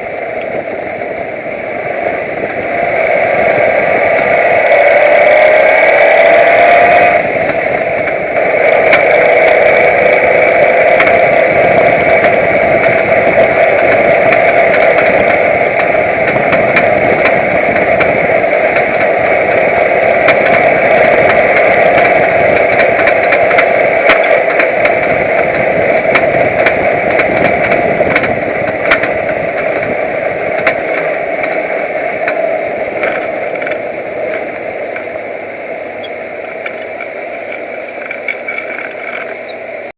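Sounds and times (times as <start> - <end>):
truck engine whine: 0.0 - 39.9
sharp ticking: 2.5 - 39.9.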